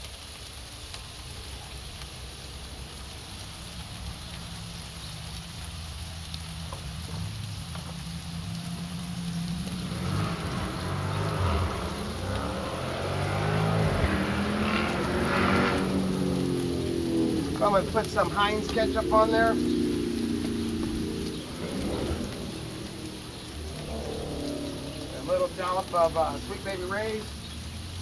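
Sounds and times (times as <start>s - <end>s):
vehicle engine revving: 5.9s - 28.0s.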